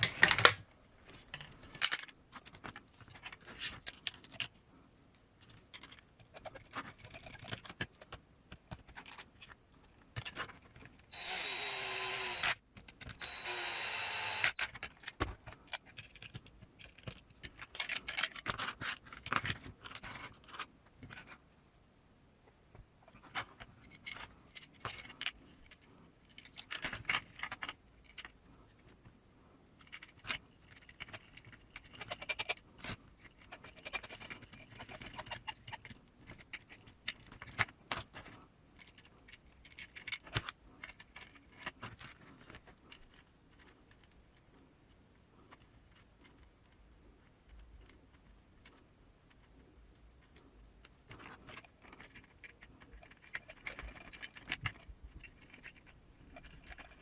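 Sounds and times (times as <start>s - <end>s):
electric screwdriver running: 11.1s - 12.6s, 13.2s - 14.6s.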